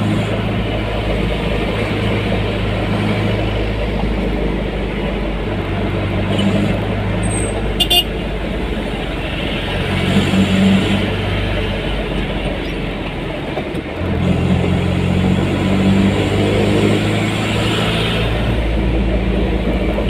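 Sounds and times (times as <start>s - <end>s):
road noise: 0.0s - 20.0s
vehicle engine running: 0.0s - 20.0s.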